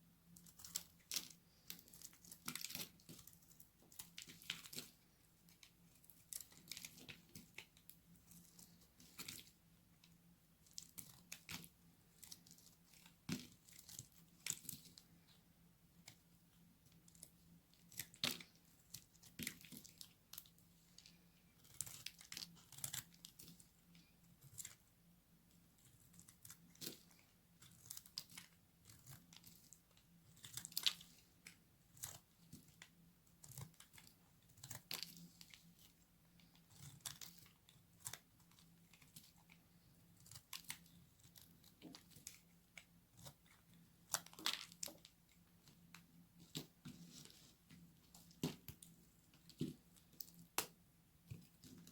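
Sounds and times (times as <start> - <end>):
blade crunching through dry soap: 0.5 - 5.1, 17.1 - 24.8, 26.1 - 35.8, 36.4 - 45.1.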